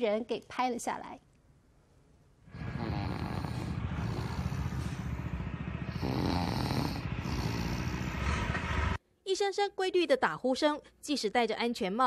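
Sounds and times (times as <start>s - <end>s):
man snoring: 2.5s - 5.2s, 5.8s - 8.5s.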